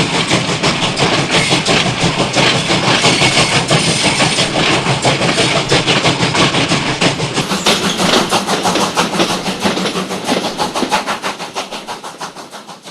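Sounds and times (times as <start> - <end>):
steam train running: 0.0 - 12.9.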